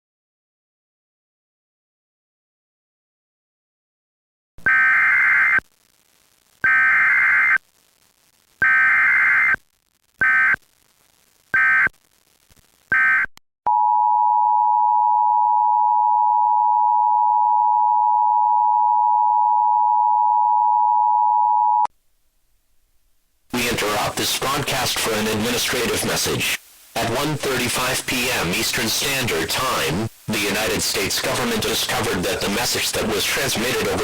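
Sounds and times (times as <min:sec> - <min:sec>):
high buzzing data screech: 0:08.6 - 0:09.6, 0:11.6 - 0:11.9.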